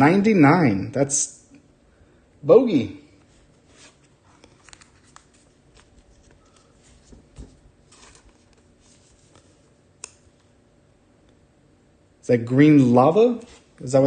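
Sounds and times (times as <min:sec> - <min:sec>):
trading cards rustling and clicking: 0:03.8 - 0:10.3.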